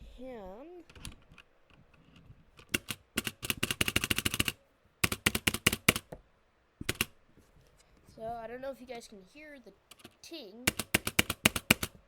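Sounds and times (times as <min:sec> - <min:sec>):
mechanical keyboard key clicks: 0:02.6 - 0:06.1, 0:06.8 - 0:07.1, 0:10.7 - 0:12.0.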